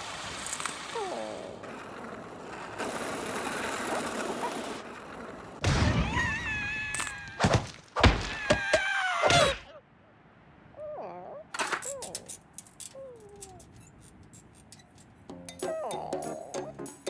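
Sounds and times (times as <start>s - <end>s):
rushing hissing noise: 0.0s - 1.6s.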